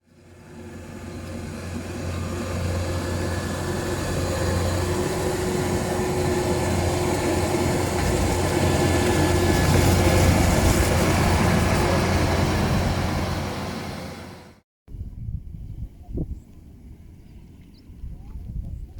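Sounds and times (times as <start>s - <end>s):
engine humming: 0.2s - 14.6s.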